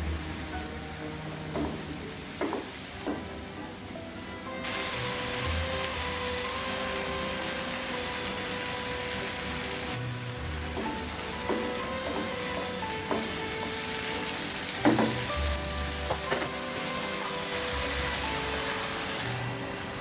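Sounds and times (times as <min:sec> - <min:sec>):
food sizzling in hot oil: 0:00.0 - 0:20.0
spatula clacking against pan: 0:10.7 - 0:13.4.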